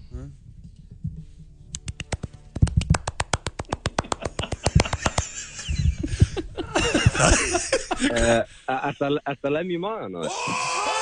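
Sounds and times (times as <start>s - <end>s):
rapid sharp slaps: 1.8s - 5.4s.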